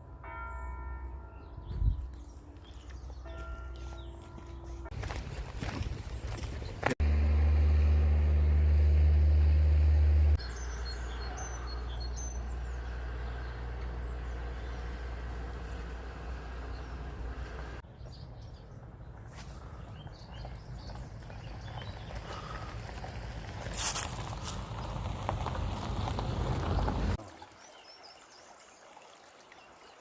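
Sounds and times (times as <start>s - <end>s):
outdoor background noise: 0.0s - 30.0s
loud low hum: 6.8s - 17.8s
small birds chirping: 10.4s - 25.3s.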